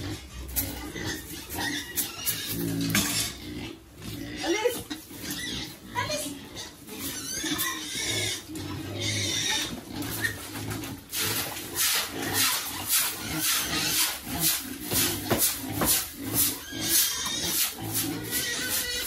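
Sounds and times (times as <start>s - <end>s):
pigs grunting: 0.0s - 19.0s
pigs chomping: 7.2s - 19.0s.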